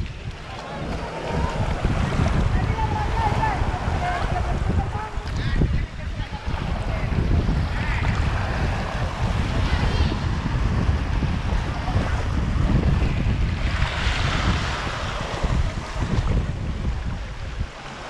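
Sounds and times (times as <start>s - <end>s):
shallow sea surf: 0.0s - 18.0s
wind buffeting microphone: 0.0s - 18.0s.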